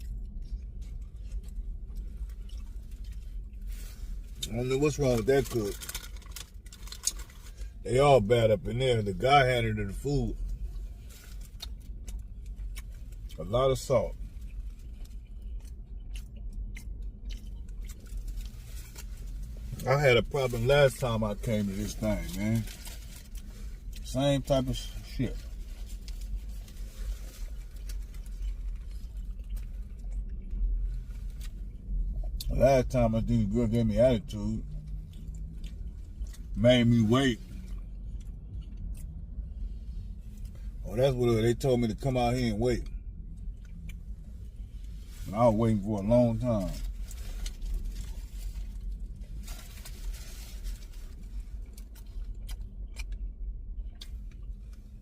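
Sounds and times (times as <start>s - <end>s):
faint small clicks and rustles: 0.0s - 7.8s, 10.4s - 19.8s, 20.5s - 32.4s, 46.7s - 55.0s
low rumble inside a car: 0.0s - 55.0s.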